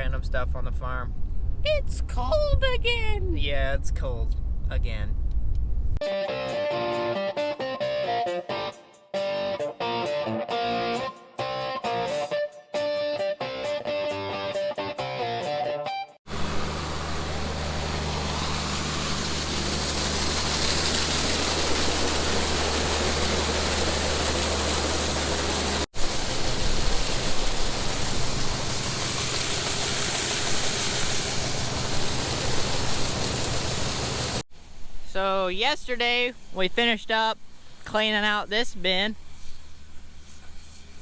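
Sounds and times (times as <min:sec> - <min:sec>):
low rumble: 0:03.5 - 0:06.0
machinery humming: 0:16.3 - 0:34.4.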